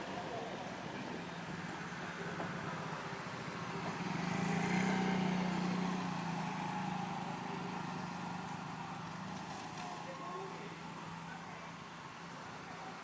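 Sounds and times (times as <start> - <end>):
small engine running: 2.0 - 11.3.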